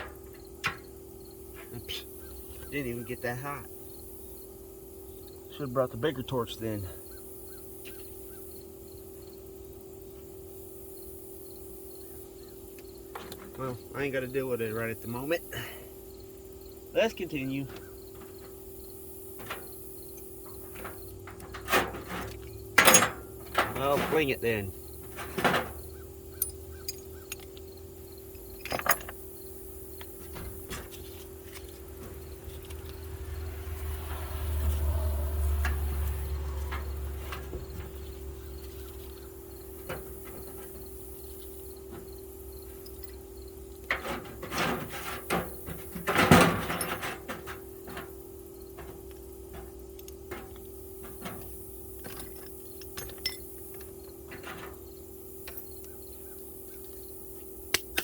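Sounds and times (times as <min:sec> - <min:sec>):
tools and metal clinking: 0:00.0 - 0:02.0, 0:13.1 - 0:15.8, 0:17.1 - 0:57.0
steady hum: 0:00.0 - 0:33.4.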